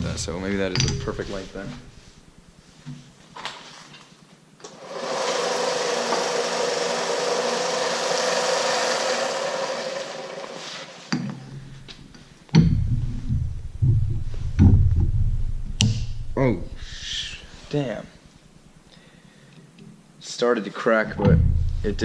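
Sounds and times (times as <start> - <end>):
small power tool motor: 4.7 - 11.0
loud thump: 12.6 - 16.4, 21.2 - 22.0.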